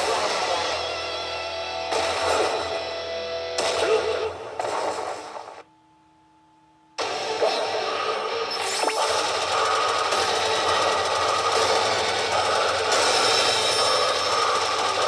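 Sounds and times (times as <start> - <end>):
electronic tone: 7.0 - 9.6
pachinko machine rapid clatter: 8.6 - 15.0.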